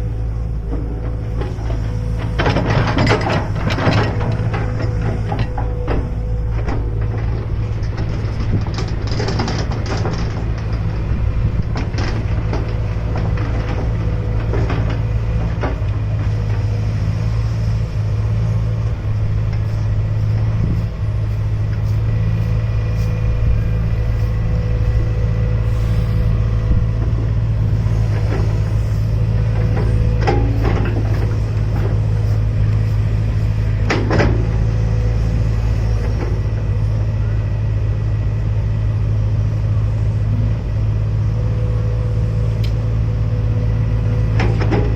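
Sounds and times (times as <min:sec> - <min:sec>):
excavator diesel engine humming: 0:00.0 - 0:44.9
machine knocks and clatters: 0:00.7 - 0:16.7, 0:29.5 - 0:34.8.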